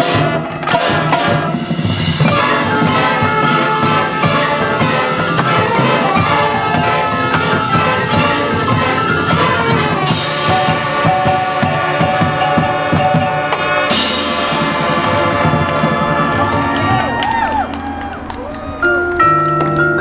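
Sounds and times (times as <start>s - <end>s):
marching band playing: 0.0s - 20.0s
cymbal crash: 13.9s - 16.7s.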